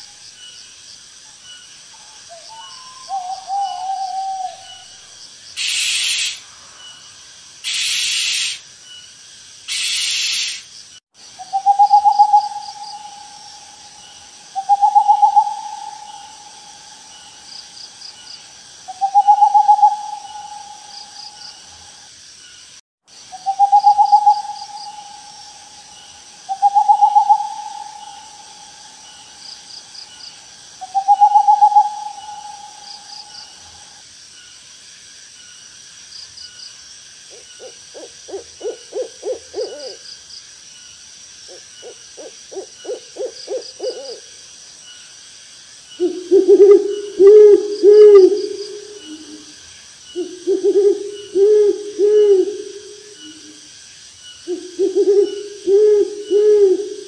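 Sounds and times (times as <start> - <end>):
insects chirping: 0.0 - 57.0
owl hooting: 2.0 - 5.0, 5.6 - 6.4, 7.6 - 8.6, 9.7 - 10.6, 11.4 - 17.8, 18.9 - 21.8, 23.3 - 29.4, 30.8 - 33.8, 37.3 - 40.0, 41.5 - 44.2, 46.0 - 49.5, 50.2 - 53.6, 54.5 - 57.0
harsh hissing screeches: 5.6 - 6.6, 7.6 - 8.6, 9.7 - 10.7.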